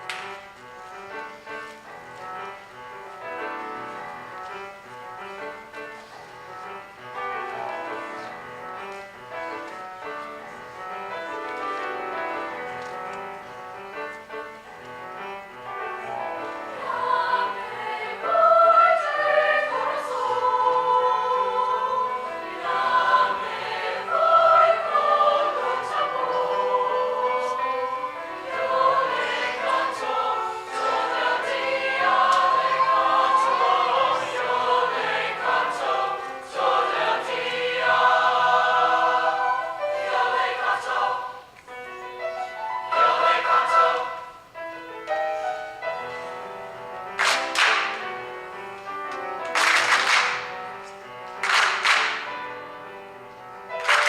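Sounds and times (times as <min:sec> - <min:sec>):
choir singing in parts: 0:15.2 - 0:48.6, 0:49.4 - 0:52.9, 0:53.7 - 0:54.0.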